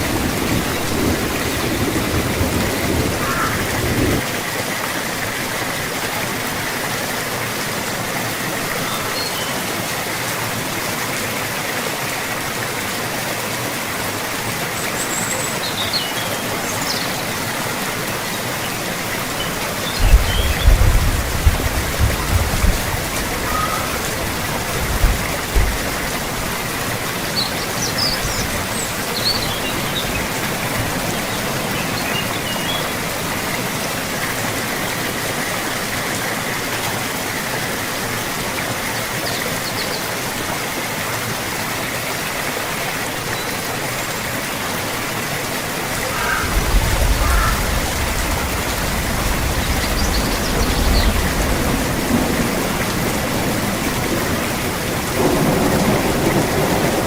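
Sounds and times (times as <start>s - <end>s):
steady rain: 0.0s - 57.0s
low rumbling thumps: 20.0s - 23.3s, 24.5s - 26.3s.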